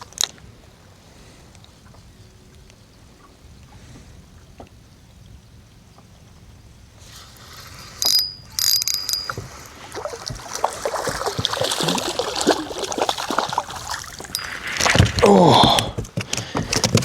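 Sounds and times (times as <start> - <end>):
fishing reel clicking and rattling: 8.0 - 9.8.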